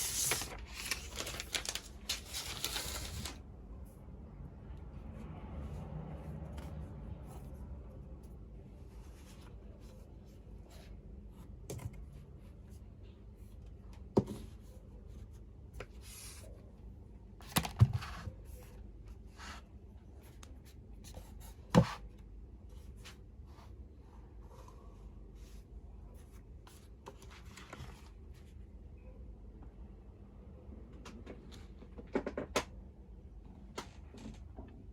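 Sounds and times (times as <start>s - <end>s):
paper and plastic rustling: 0.0s - 3.4s.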